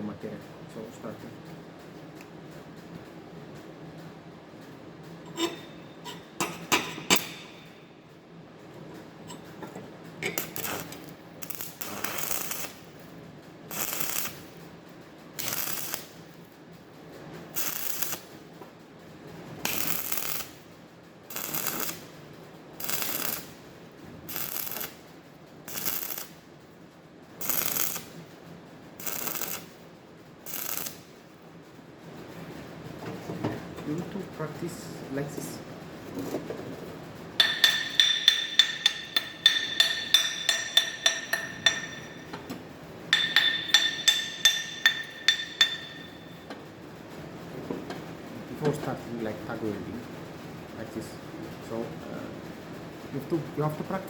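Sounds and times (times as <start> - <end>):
welding arc crackle: 10.2 - 16.6, 17.5 - 18.4, 19.5 - 20.7, 21.3 - 26.4, 27.4 - 28.3, 28.9 - 31.3, 43.2 - 46.5.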